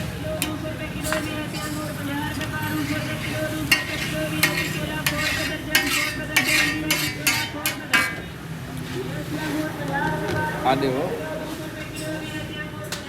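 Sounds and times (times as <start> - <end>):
metal spatula scraping pan: 1.0 - 8.3
spatula striking metal pan: 2.8 - 8.2.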